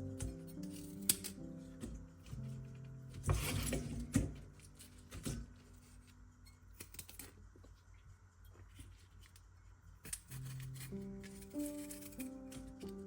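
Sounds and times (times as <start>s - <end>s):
music: 0.0s - 7.0s, 10.1s - 13.0s.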